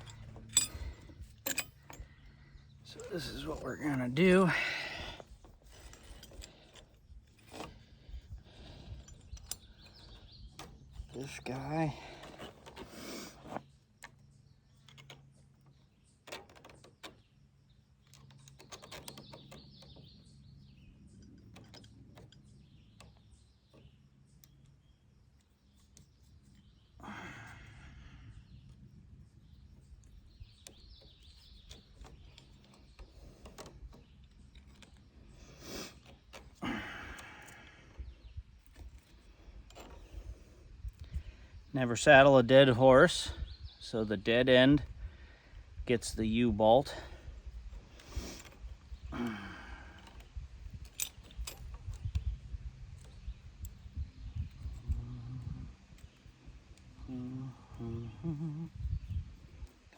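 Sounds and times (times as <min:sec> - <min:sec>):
low steady hum: 0:23.9 - 0:59.9.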